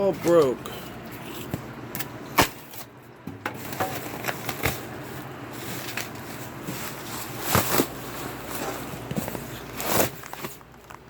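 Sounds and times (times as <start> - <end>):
cardboard and styrofoam rustling: 3.5 - 11.0.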